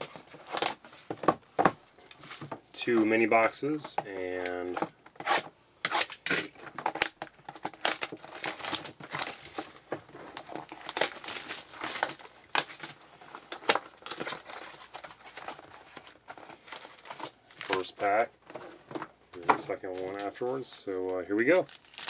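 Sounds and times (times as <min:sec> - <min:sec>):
wrapping crinkling and tearing: 0:05.3 - 0:18.3, 0:19.8 - 0:22.0.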